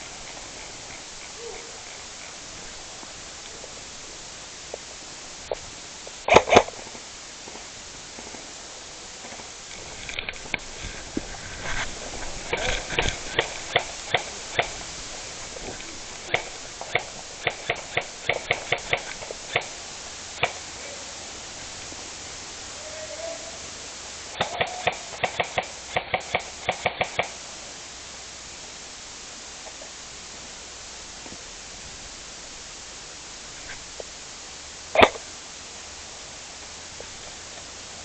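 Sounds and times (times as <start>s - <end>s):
airsoft gun shots: 6.3s - 7.0s, 24.4s - 27.4s, 35.0s - 35.2s.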